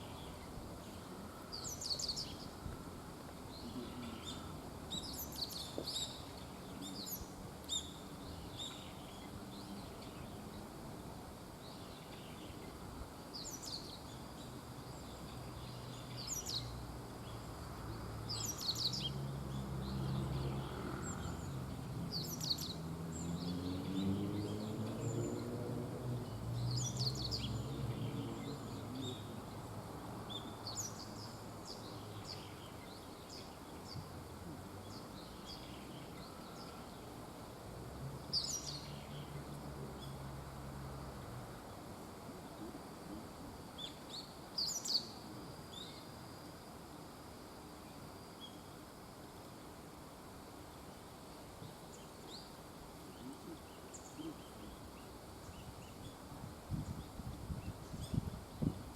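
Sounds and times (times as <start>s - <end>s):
small birds chirping: 0.0s - 10.8s, 11.4s - 25.6s, 26.2s - 37.3s, 38.2s - 40.4s, 42.4s - 46.2s.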